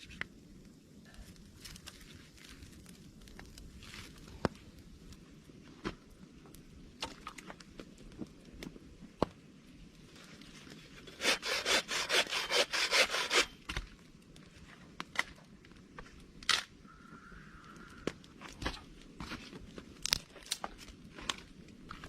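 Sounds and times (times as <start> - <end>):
hand saw rasping through wood: 11.0 - 13.5.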